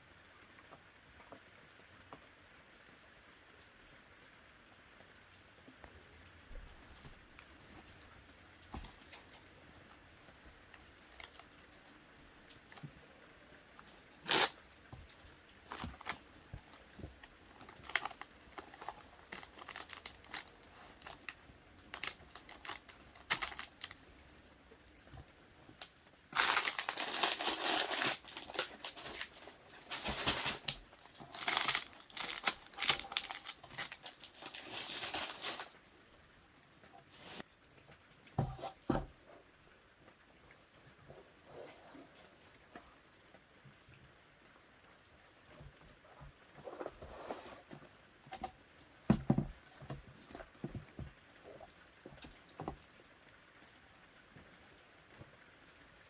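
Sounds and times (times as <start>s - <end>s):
packaging crinkling: 14.2s - 24.1s, 25.7s - 35.8s.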